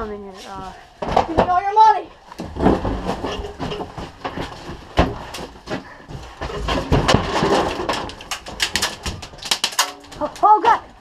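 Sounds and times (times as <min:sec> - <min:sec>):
irregular knocks: 0:02.4 - 0:10.4.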